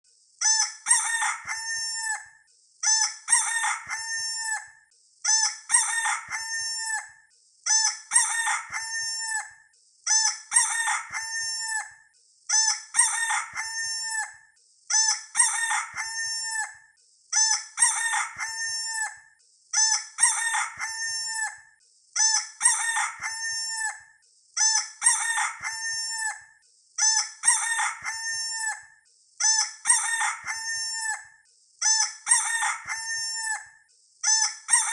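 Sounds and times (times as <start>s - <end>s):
rooster crowing: 0.9s - 2.3s, 3.3s - 4.7s, 5.7s - 7.1s, 8.1s - 9.5s, 10.2s - 12.0s, 13.0s - 14.4s, 15.4s - 16.8s, 17.8s - 19.2s, 20.2s - 21.6s, 22.6s - 24.1s, 25.0s - 26.5s, 27.1s - 29.0s, 29.8s - 31.3s, 31.9s - 33.7s.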